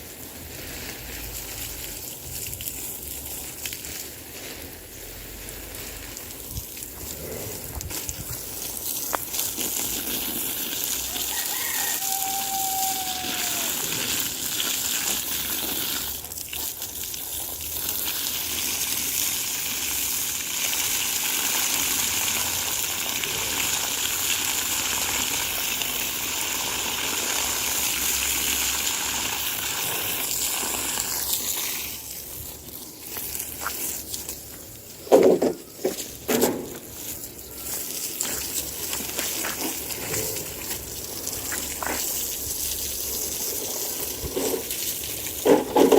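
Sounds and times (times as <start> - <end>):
water gushing from a hose: 0.0 - 45.9
rooster crowing: 11.0 - 14.0.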